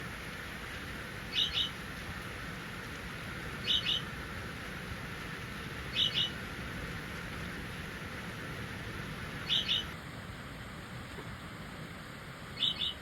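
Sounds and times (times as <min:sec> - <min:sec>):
steady background hiss: 0:00.0 - 0:13.0
budgerigar chirping: 0:01.4 - 0:01.7, 0:06.0 - 0:06.3, 0:09.4 - 0:09.9, 0:12.6 - 0:13.0.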